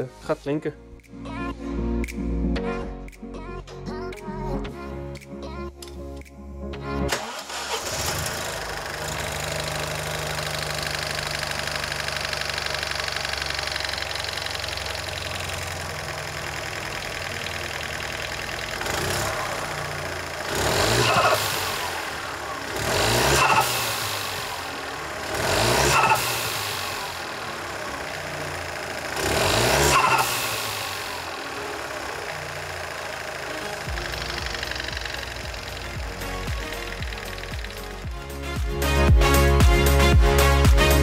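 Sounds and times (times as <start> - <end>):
car engine idling and revving: 7.1 - 41.0.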